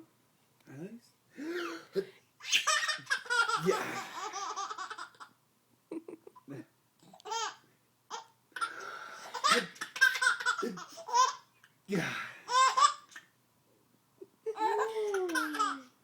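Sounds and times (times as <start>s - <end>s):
baby laughing: 2.4s - 5.3s, 9.3s - 11.4s, 12.5s - 13.3s, 14.5s - 15.9s.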